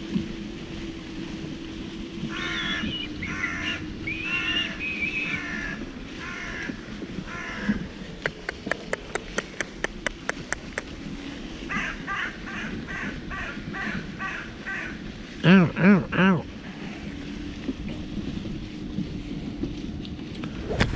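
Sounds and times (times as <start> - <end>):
crows cawing: 2.3 - 7.9, 11.6 - 15.1.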